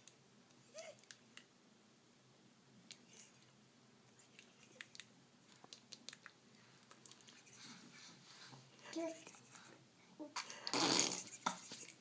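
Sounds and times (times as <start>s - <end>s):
baby mouth clicks and smacks: 4.1s - 7.5s.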